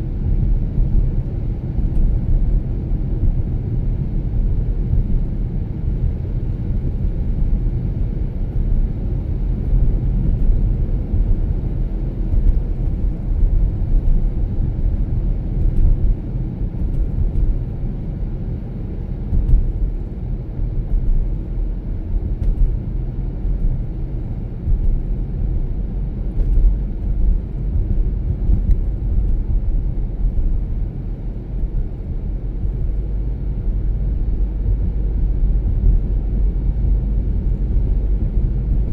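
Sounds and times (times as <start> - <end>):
car driving on snowy road: 0.0 - 38.9.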